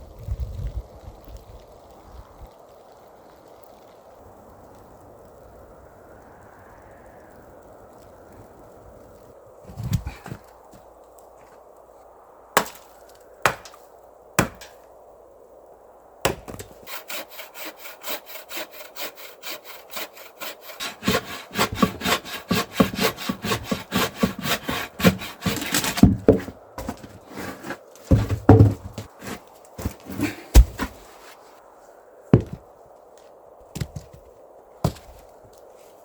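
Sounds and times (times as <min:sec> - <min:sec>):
hand saw cutting wood: 0:13.5 - 0:13.8, 0:14.4 - 0:14.7, 0:16.3 - 0:31.0
sharp knocks on wood: 0:13.5 - 0:13.8, 0:14.4 - 0:14.7, 0:16.3 - 0:16.7, 0:28.1 - 0:29.9, 0:32.4 - 0:32.6
heavy thuds: 0:21.0 - 0:31.2, 0:32.4 - 0:32.6.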